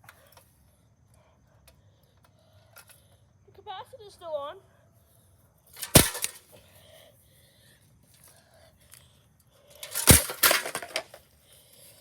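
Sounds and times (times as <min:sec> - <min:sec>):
metal parts being handled: 0:05.8 - 0:06.4, 0:09.8 - 0:11.2
metal parts clattering: 0:05.8 - 0:06.4, 0:09.8 - 0:11.2
sharp knock of metal parts: 0:05.8 - 0:06.4, 0:09.8 - 0:11.1.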